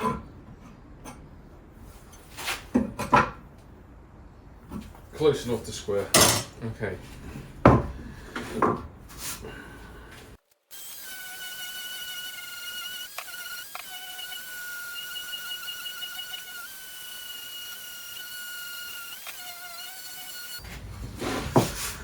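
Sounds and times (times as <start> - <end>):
power tool motor whining: 10.6 - 20.6.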